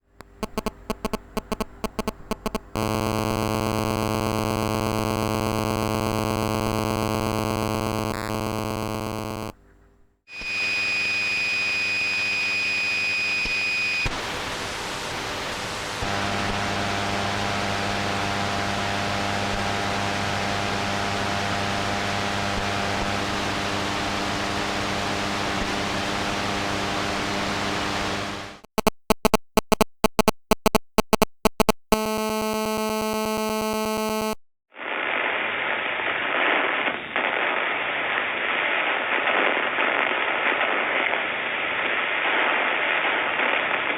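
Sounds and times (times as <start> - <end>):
rapid clicking pulses: 0.2 - 9.5, 28.6 - 34.4
short buzzing tone: 0.2 - 9.5, 28.4 - 34.4
dull crackling static: 0.2 - 9.6, 14.2 - 34.4
static hiss: 0.2 - 9.6, 14.2 - 28.9
steady electrical hum: 0.5 - 9.5.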